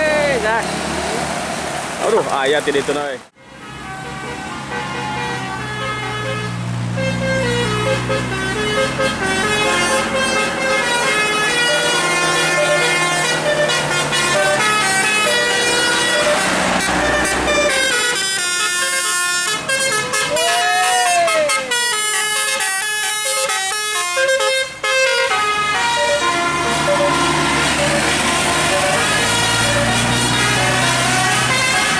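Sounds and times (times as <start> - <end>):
bus engine rumbling: 0.0 - 31.9
multi-tone bus air horn melody: 3.4 - 31.9.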